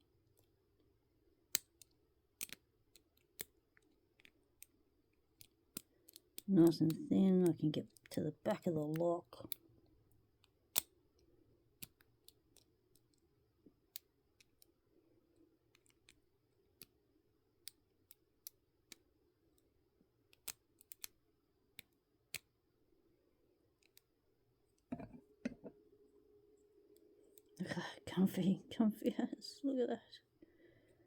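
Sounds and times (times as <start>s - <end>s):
lock pick metallic clicks: 1.5s - 3.6s, 10.4s - 10.9s.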